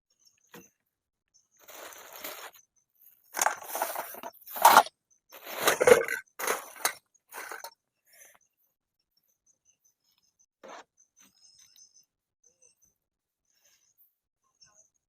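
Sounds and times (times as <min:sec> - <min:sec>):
rustling and crunching: 0:01.6 - 0:02.6, 0:03.2 - 0:07.7.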